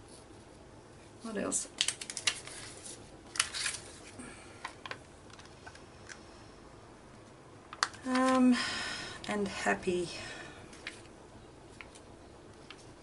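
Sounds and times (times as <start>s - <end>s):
paper rustling: 1.3s - 4.2s.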